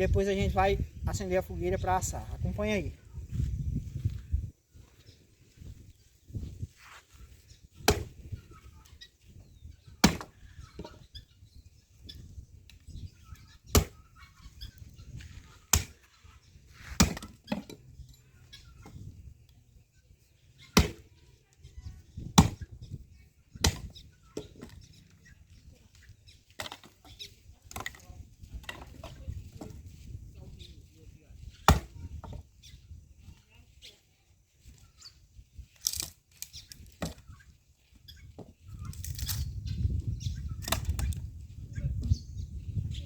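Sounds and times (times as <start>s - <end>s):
axe chopping wood: 7.8s - 8.2s, 10.0s - 10.3s, 13.7s - 14.0s, 15.7s - 16.0s, 16.9s - 17.8s, 20.8s - 21.1s, 22.4s - 22.6s, 23.6s - 24.7s, 31.6s - 32.0s.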